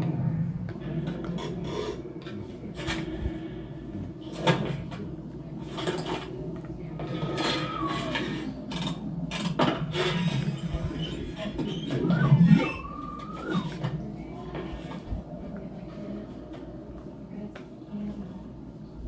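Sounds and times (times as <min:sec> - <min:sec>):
steady low hum: 0:06.3 - 0:14.4
short pitched whir: 0:07.2 - 0:08.5, 0:10.5 - 0:13.8.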